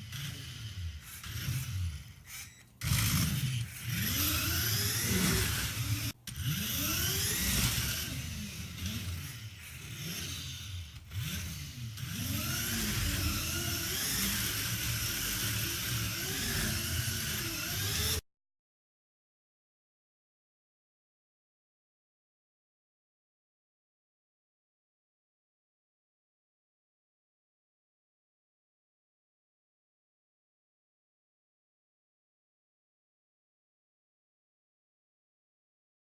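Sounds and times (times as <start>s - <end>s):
toy car motor whining: 0.0s - 18.2s.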